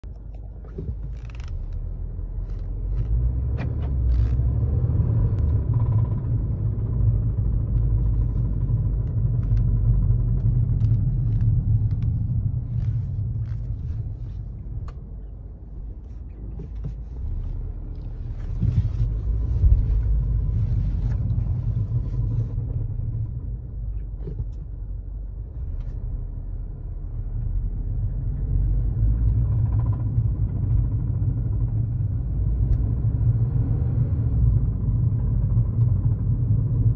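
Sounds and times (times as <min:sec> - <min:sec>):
car engine rattling: 0:00.0 - 0:36.9.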